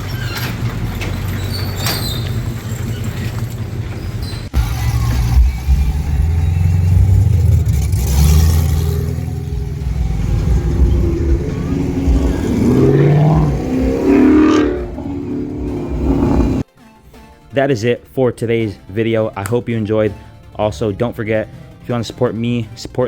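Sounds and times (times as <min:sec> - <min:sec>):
vehicle engine accelerating: 0:00.0 - 0:16.6.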